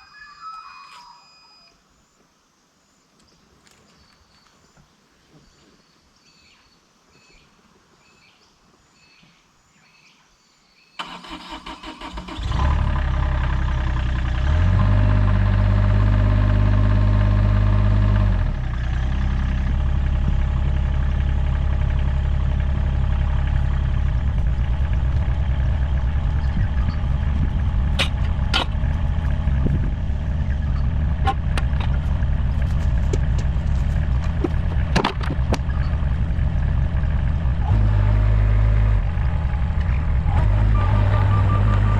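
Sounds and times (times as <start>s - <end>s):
engine starting and idling: 11.0s - 41.9s.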